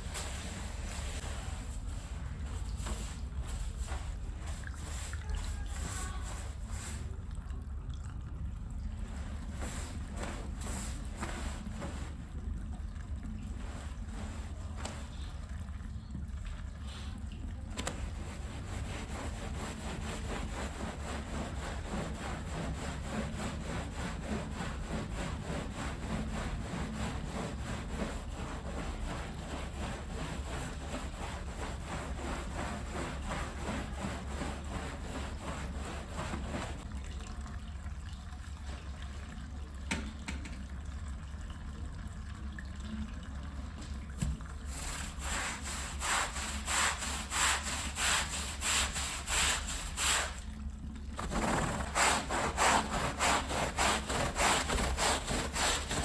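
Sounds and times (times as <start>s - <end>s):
wet rug being scrubbed: 0.0s - 7.2s, 9.0s - 12.3s, 13.5s - 15.2s, 17.8s - 36.9s, 44.7s - 50.4s, 51.2s - 56.0s.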